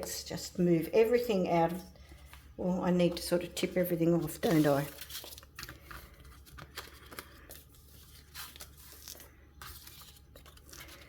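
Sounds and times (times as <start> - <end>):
paper rustling and scraping: 4.0 - 11.0.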